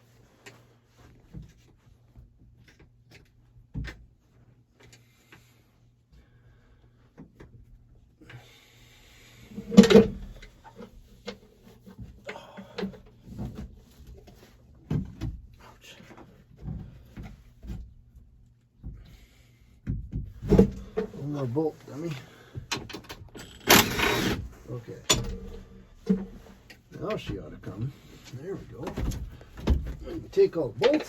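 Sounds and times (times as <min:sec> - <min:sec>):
tools and metal parts clanking: 0:25.0 - 0:26.7, 0:28.8 - 0:31.0.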